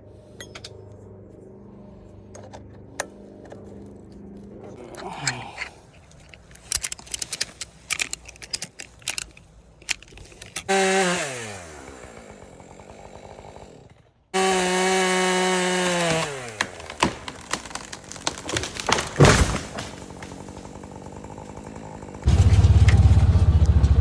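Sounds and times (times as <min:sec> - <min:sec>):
chainsaw at full throttle: 0:10.7 - 0:24.0.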